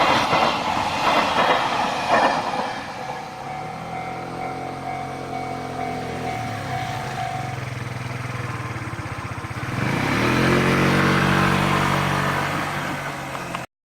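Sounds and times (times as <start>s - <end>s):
vehicle engine accelerating: 5.3s - 13.7s.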